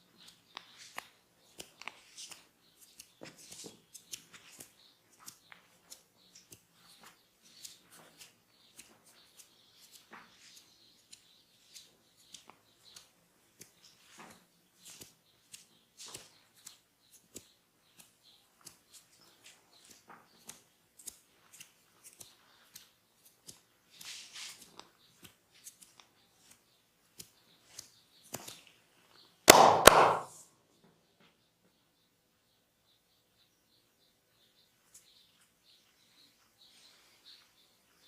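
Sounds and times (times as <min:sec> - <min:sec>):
hands rubbing skin and hair: 0:00.2 - 0:30.4
sharp double snap: 0:29.5 - 0:30.4.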